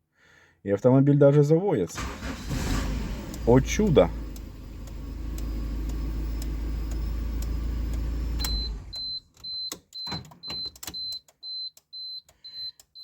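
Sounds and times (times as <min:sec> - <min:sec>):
car engine idling: 0:02.0 - 0:09.0
electronic warning beeps: 0:05.9 - 0:13.0.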